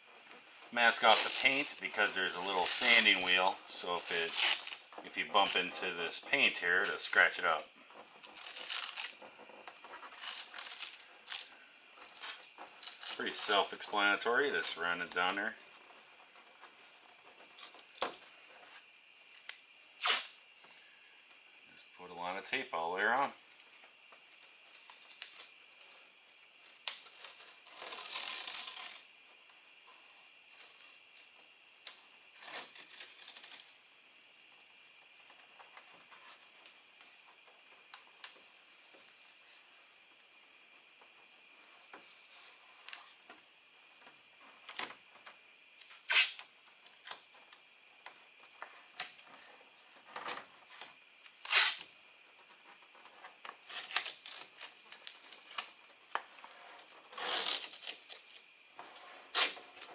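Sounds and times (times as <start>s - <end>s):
crickets chirping: 0.0s - 59.9s
masking tape tearing: 0.9s - 7.6s, 8.2s - 9.3s, 10.0s - 11.5s, 12.2s - 15.4s, 20.0s - 20.4s, 26.8s - 29.0s, 32.4s - 33.7s, 45.9s - 47.2s, 51.3s - 51.9s, 53.6s - 55.8s, 56.8s - 58.4s, 59.2s - 59.9s.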